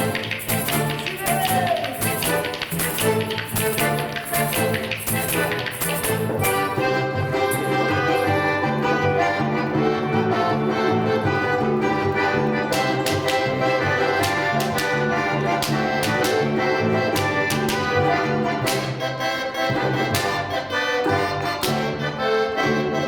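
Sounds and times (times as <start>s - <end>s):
sharp percussive strikes: 0.0s - 8.4s
small instrumental ensemble: 0.0s - 23.0s.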